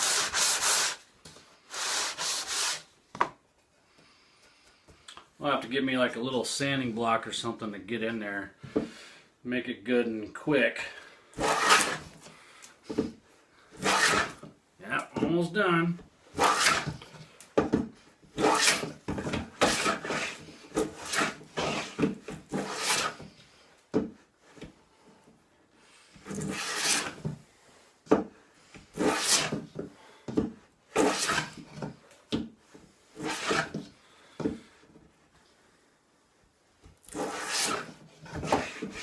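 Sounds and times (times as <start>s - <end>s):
hand rasping along wooden board: 11.4s - 12.1s, 13.8s - 14.5s, 16.4s - 17.0s, 18.4s - 23.2s, 26.3s - 27.2s, 29.0s - 29.6s, 31.0s - 31.7s, 33.2s - 33.9s, 37.1s - 39.0s.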